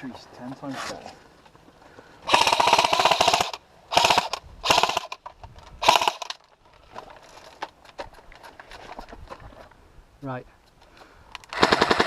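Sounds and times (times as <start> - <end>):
airsoft rifle rattling bursts: 2.3 - 6.5, 11.5 - 12.0.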